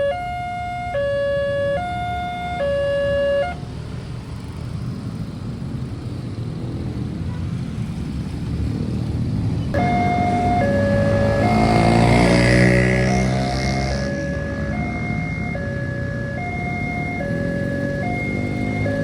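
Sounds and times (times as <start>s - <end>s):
level crossing two-tone alarm: 0.0s - 3.6s, 9.8s - 19.0s
low rumble of vehicles: 0.0s - 19.0s.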